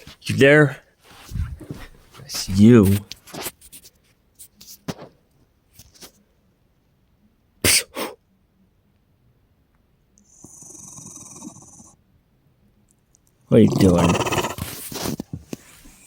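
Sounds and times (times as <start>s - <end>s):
dog sneezing: 7.6s - 8.2s.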